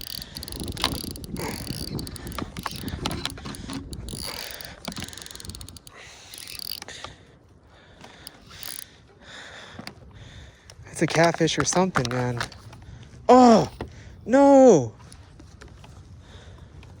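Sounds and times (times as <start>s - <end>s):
fishing reel clicking and ratcheting: 0.0s - 7.1s, 8.0s - 9.0s.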